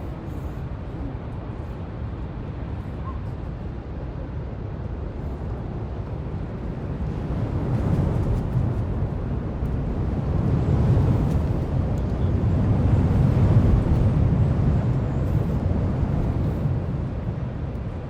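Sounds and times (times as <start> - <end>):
heavy surf rumbling: 6.6 - 18.0.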